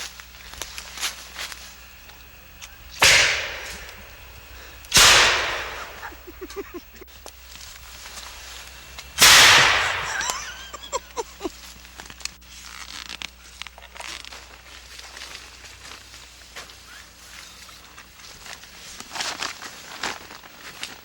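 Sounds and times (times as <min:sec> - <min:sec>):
potato cannon bang: 0:02.5 - 0:06.6, 0:09.1 - 0:10.6.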